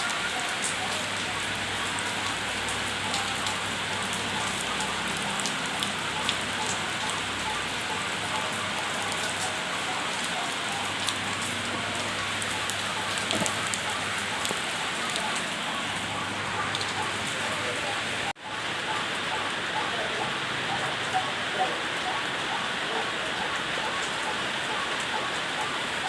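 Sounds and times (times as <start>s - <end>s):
steady rain hissing: 0.0s - 26.0s.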